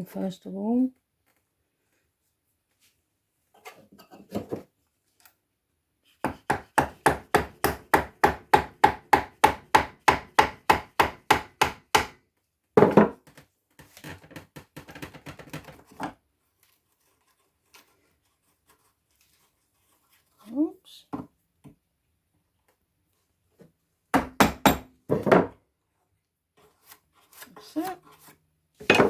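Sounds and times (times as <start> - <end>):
mallet striking wood chisel: 6.2 - 12.2, 24.1 - 24.9.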